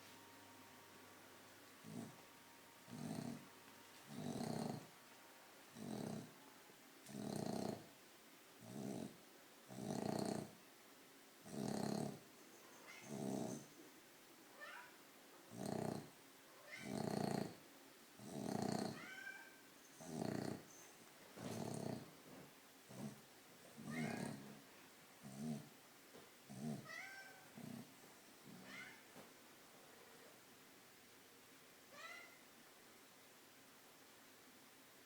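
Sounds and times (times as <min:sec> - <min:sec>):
dogs snoring: 0:01.8 - 0:05.0, 0:05.7 - 0:06.4, 0:07.0 - 0:08.0, 0:08.6 - 0:10.6, 0:11.4 - 0:12.3, 0:13.0 - 0:13.8, 0:15.5 - 0:16.2, 0:16.8 - 0:17.6, 0:18.2 - 0:19.1, 0:19.9 - 0:20.8, 0:21.4 - 0:25.8, 0:26.5 - 0:26.9, 0:27.5 - 0:28.6.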